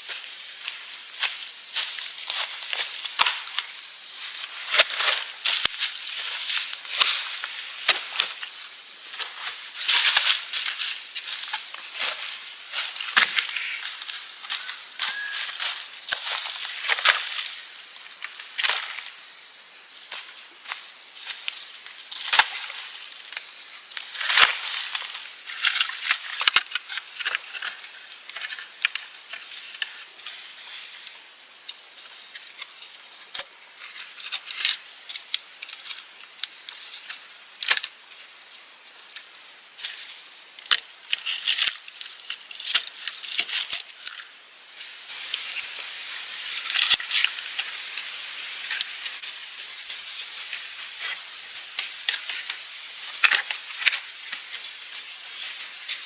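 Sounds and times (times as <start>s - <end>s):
crisp crackling and rustling: 0.0s - 19.3s, 20.0s - 56.0s
faint hiss: 0.0s - 56.0s.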